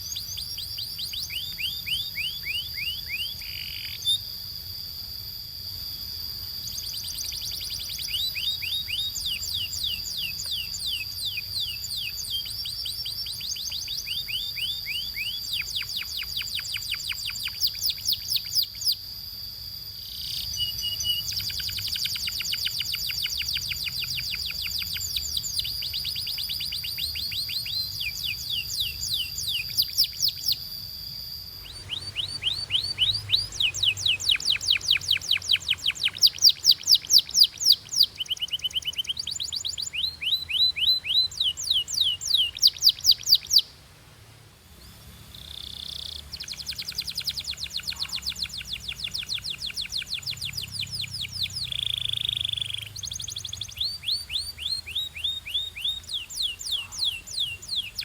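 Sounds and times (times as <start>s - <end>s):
steady high tone: 30.6s - 37.9s
canary trilling: 31.2s - 43.7s, 45.4s - 58.0s.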